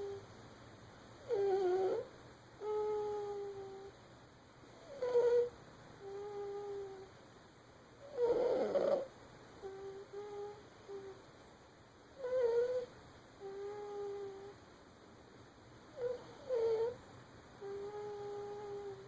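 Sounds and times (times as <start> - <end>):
baby snoring: 8.1 - 11.2, 16.0 - 17.0.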